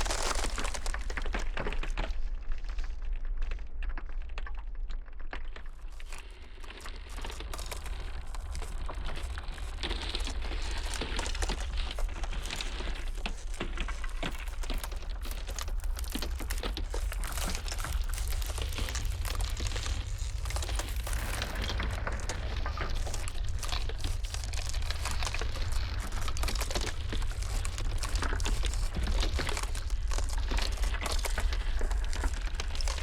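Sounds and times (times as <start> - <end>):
ice cracking and crackling: 0.0 - 33.0
blizzard wind rumbling: 7.5 - 33.0.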